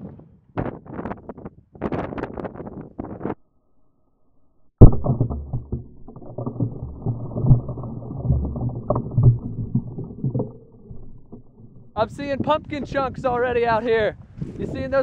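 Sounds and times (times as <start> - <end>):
scattered thumps: 4.8 - 13.5
low rumbling: 4.8 - 14.7.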